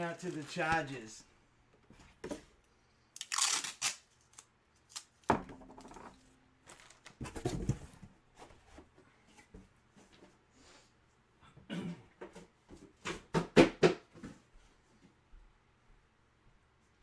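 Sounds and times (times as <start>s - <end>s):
packaging rustling: 0.1s - 0.9s, 3.2s - 5.1s, 6.6s - 7.5s
objects knocking on a table: 5.3s - 6.2s.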